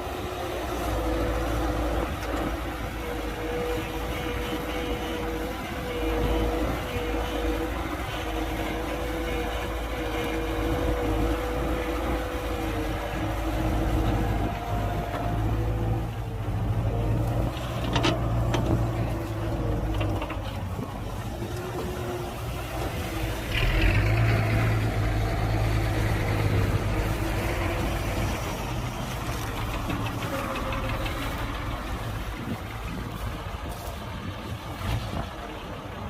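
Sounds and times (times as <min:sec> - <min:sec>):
heavy diesel engine running: 0:00.0 - 0:36.0.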